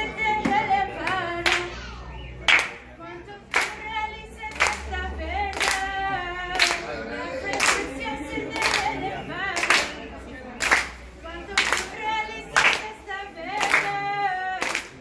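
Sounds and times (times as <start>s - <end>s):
voices singing: 0.0s - 15.0s
hand claps in time: 2.4s - 2.9s, 3.5s - 3.8s, 5.5s - 5.9s, 6.5s - 6.9s, 8.5s - 8.9s, 9.6s - 10.0s, 10.6s - 11.0s, 11.6s - 14.0s, 14.6s - 15.0s.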